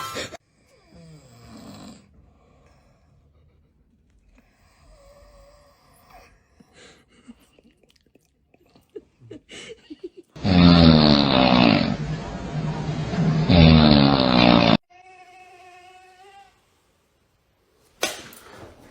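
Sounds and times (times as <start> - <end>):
person snoring: 10.4 - 12.0, 13.4 - 14.8.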